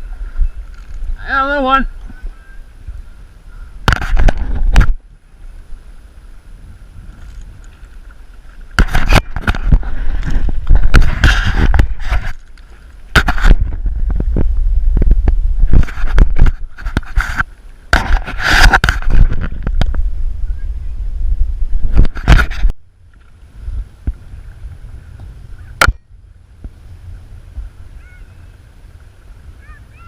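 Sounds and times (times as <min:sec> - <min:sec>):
wind buffeting microphone: 0:00.0 - 0:30.0
phone handling scrapes and knocks: 0:08.8 - 0:12.5, 0:13.2 - 0:13.8, 0:15.7 - 0:20.0, 0:21.9 - 0:22.7
deep rumble: 0:13.0 - 0:16.8, 0:17.8 - 0:28.1.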